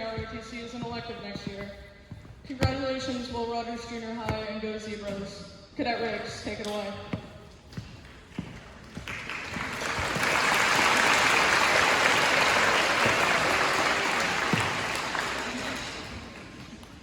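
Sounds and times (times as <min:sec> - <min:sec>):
audience applauding: 0:09.0 - 0:17.0.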